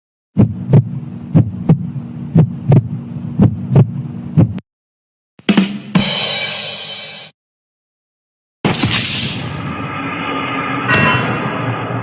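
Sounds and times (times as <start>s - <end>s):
heartbeat thumps: 0.4s - 4.6s
thud with hissing crash: 8.7s - 9.6s
low hum: 8.7s - 12.0s.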